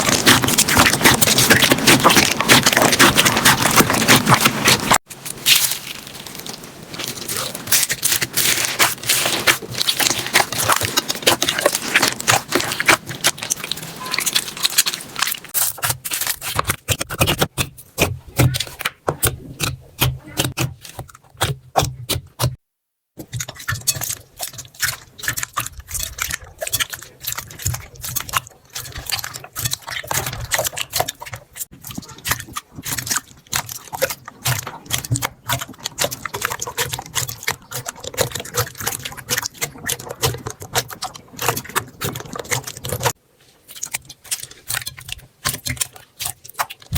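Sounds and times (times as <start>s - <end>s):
slime crackling and popping: 0.0s - 21.5s, 23.2s - 46.9s.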